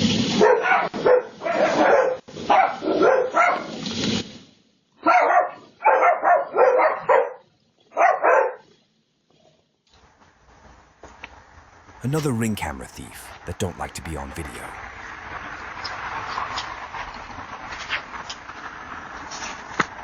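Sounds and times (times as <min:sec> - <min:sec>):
dog barking: 0:00.4 - 0:03.7, 0:05.0 - 0:08.7.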